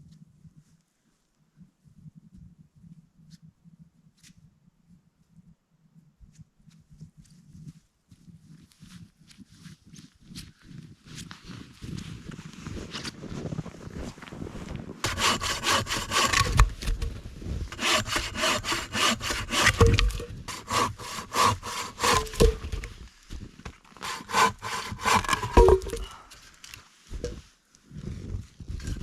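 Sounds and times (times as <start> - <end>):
hand saw cutting wood: 15.0 - 17.1, 17.7 - 23.0, 24.0 - 26.2.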